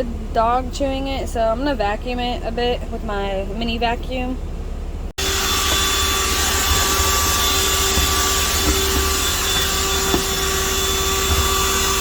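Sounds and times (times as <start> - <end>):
handheld vacuum cleaner whine: 5.2 - 12.0.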